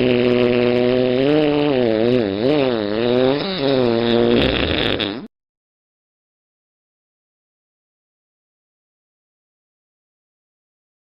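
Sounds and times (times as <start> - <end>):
fart sound effect: 0.0 - 5.3.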